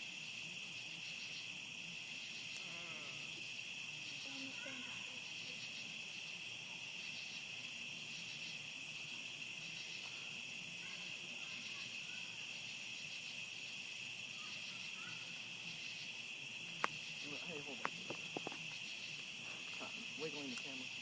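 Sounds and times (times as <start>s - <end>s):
insects trilling: 0.0s - 21.0s
shrill insect buzz: 0.2s - 21.0s.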